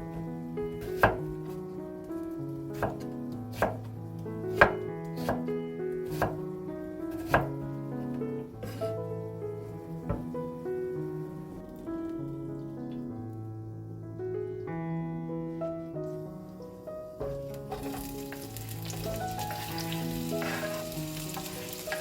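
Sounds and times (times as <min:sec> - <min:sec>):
soft background music: 0:00.0 - 0:22.0
knife slicing on cutting board: 0:04.6 - 0:05.4, 0:07.2 - 0:07.5, 0:08.6 - 0:09.0, 0:20.4 - 0:22.0.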